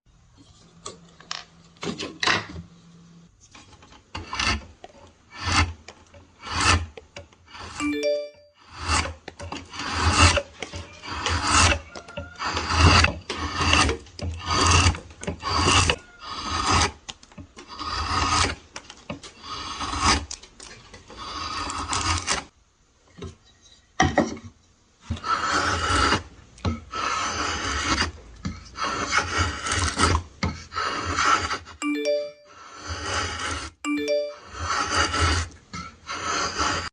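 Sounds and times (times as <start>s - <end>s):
hand tool scraping wood: 3.4s - 7.8s, 8.6s - 22.5s, 25.0s - 31.8s, 32.6s - 33.8s, 34.4s - 36.9s.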